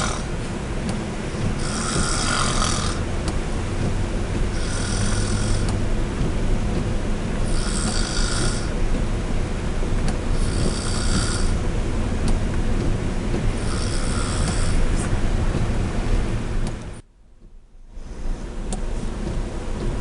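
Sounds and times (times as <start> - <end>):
woman snoring: 0.0 - 0.3, 1.6 - 3.0, 4.6 - 5.7, 7.5 - 8.7, 10.4 - 11.6, 13.6 - 14.8
steady low rumble: 0.0 - 20.0.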